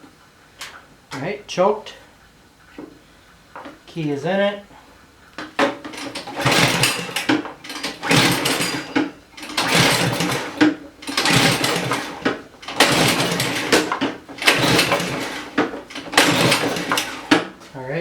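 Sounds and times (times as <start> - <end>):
recoil starter pulls: 5.3 - 17.8
engine cranking: 5.4 - 17.7.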